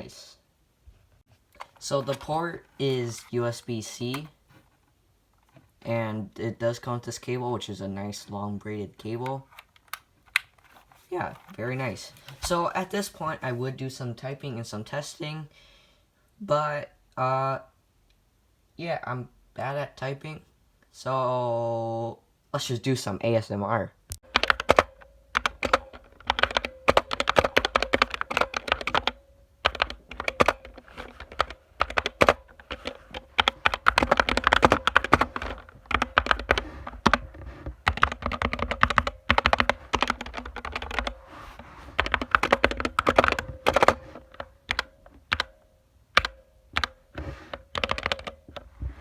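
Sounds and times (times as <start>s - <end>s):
mechanical keyboard typing: 24.3s - 41.2s, 42.0s - 45.6s, 46.2s - 48.6s.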